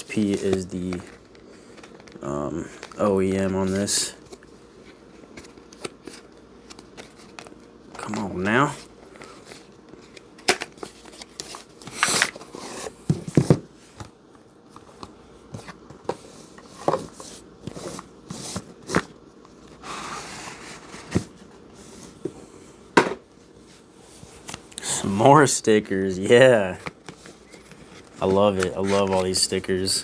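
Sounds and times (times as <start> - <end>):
paper rustling: 0.0 - 4.0, 26.5 - 30.0.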